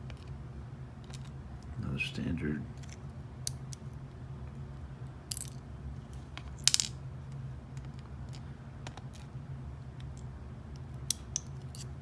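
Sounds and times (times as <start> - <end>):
small metal pins clinking: 5.3 - 7.0.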